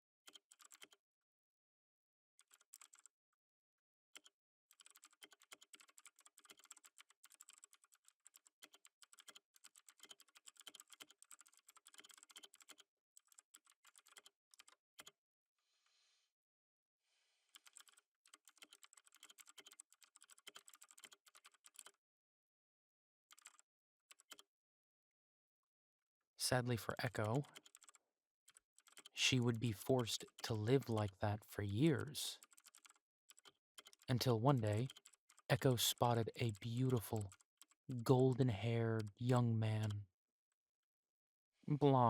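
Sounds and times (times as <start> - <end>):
computer keyboard typing: 0.3 - 1.0, 2.4 - 3.1, 4.2 - 15.1, 17.5 - 21.9, 23.3 - 24.4, 27.1 - 31.2, 32.4 - 38.0.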